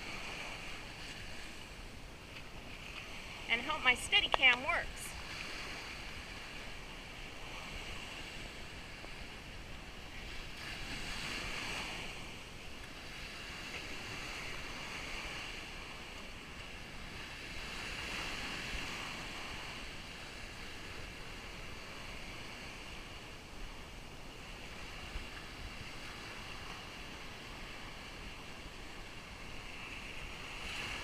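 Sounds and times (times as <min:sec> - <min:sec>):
surf washing on beach: 0:00.0 - 0:31.0.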